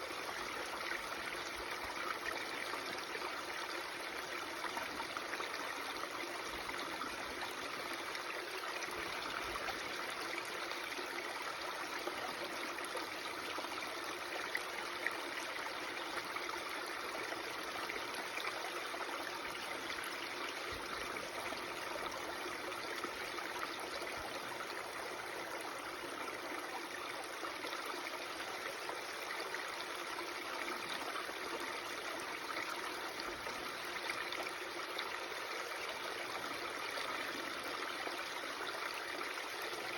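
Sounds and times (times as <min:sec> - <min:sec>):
babbling stream: 0:00.0 - 0:39.9.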